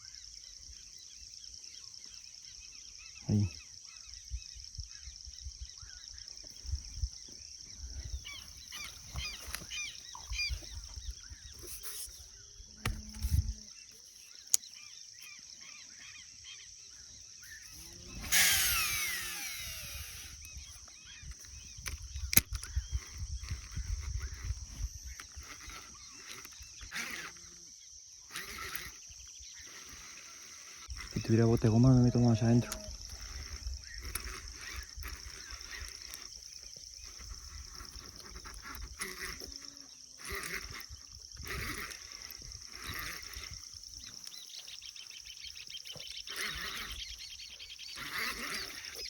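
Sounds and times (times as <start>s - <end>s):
insects buzzing: 0.0s - 49.0s
whirring falling in pitch: 17.4s - 27.7s.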